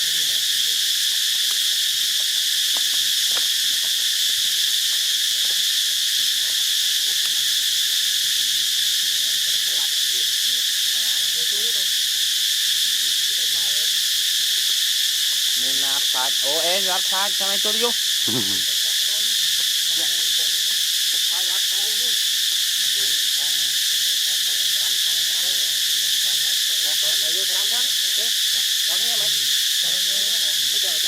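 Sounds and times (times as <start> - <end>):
high-pitched insect chorus: 0.0 - 31.0.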